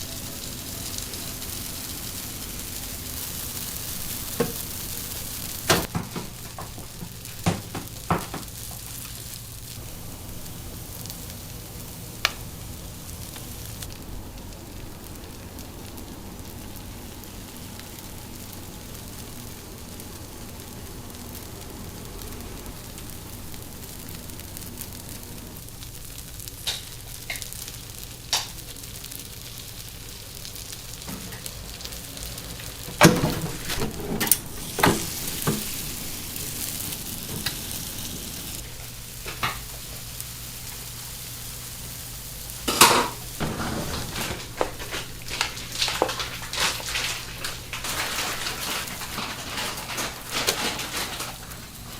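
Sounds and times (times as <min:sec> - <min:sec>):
batter sizzling in iron mould: 0:00.0 - 0:51.9
metal knocks and clatter: 0:43.4 - 0:44.9.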